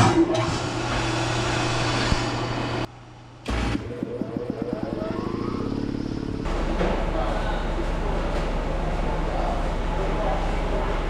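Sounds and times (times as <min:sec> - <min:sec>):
machine motor humming and hissing: 0:00.4 - 0:02.9
motor starting with rhythmic chugging: 0:03.4 - 0:06.7.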